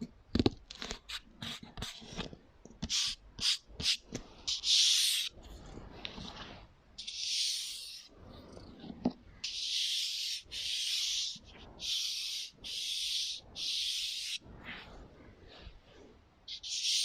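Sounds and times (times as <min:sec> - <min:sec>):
scratchy rubbing strokes: 0:04.5 - 0:08.8, 0:09.4 - 0:17.0.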